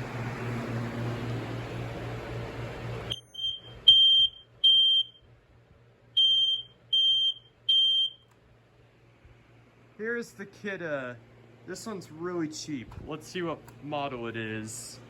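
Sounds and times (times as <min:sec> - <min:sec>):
smoke alarm beeps: 0:03.1 - 0:05.3, 0:06.2 - 0:08.3.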